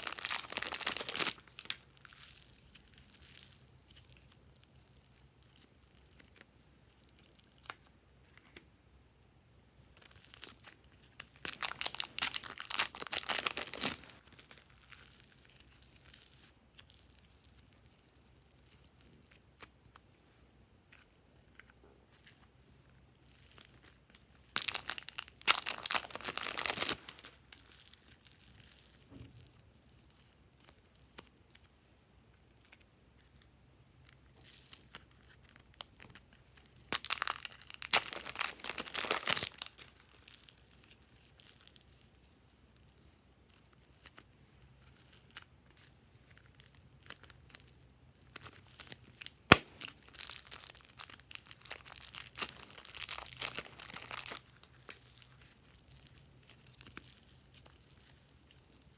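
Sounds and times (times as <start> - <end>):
slime crackling and popping: 0.0 - 8.6, 9.9 - 19.8, 23.3 - 31.8, 34.4 - 58.9
hand handling slime: 0.0 - 8.7, 9.9 - 20.1.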